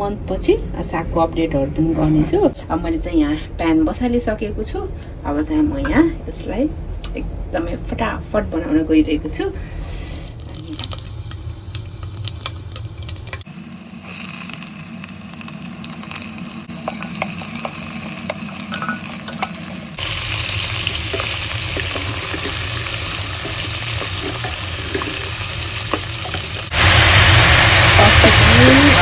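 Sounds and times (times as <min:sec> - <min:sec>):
food sizzling in a hot pan: 0:10.1 - 0:29.0.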